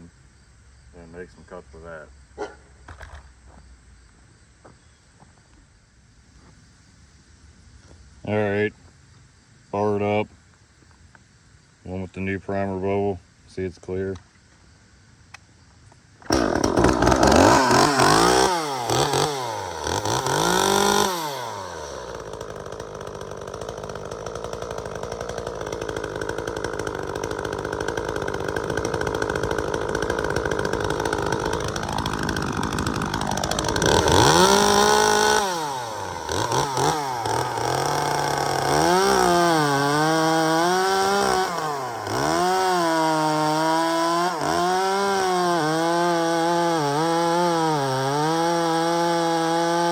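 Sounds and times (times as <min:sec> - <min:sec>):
chainsaw revving and cutting wood: 0:16.2 - 0:49.9.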